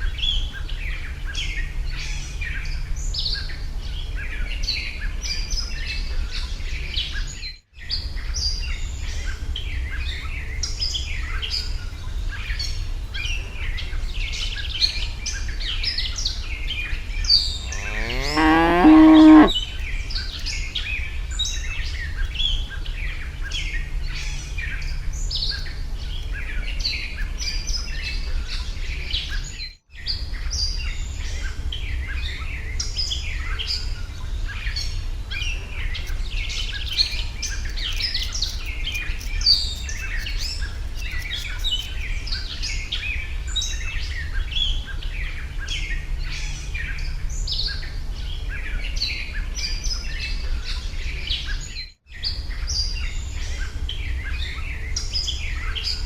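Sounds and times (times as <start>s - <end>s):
small birds chirping: 0.0s - 29.7s, 30.6s - 49.2s
steady low hum: 31.3s - 49.5s.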